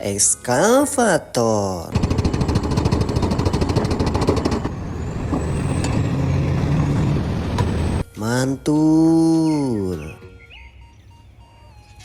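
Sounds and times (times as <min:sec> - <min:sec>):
heavy engine running: 0:01.9 - 0:08.0
hydraulic hammer hammering: 0:02.0 - 0:06.6.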